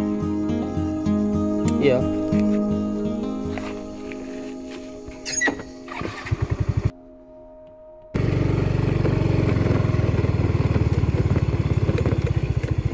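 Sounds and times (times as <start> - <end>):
small engine running: 5.9 - 6.9, 8.2 - 12.9.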